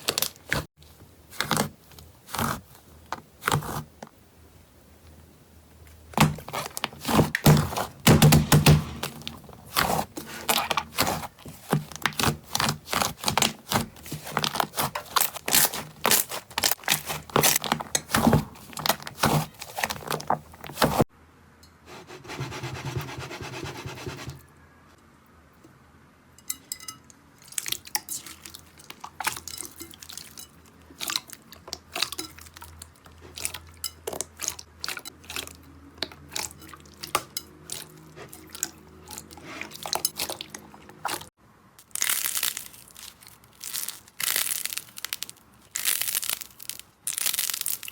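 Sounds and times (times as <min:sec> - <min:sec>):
slime rubbing: 0:09.0 - 0:21.1.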